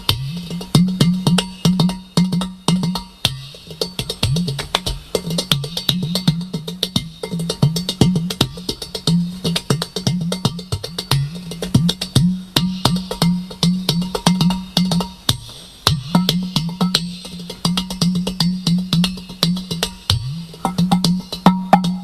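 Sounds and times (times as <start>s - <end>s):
hollow bass drum tones: 0.0s - 22.0s
sharp taps on clay drum: 0.0s - 22.0s.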